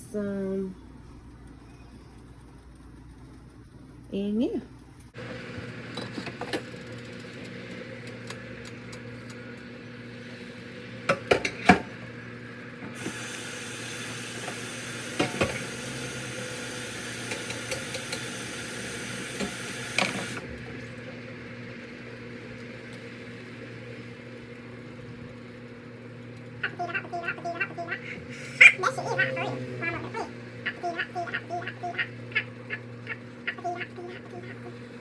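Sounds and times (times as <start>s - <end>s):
pots and utensils clattering: 5.9s - 6.9s, 11.1s - 12.0s.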